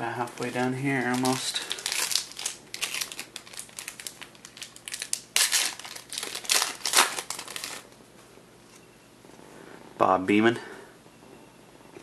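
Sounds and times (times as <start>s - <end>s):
trading cards rustling and snapping: 1.0s - 7.8s.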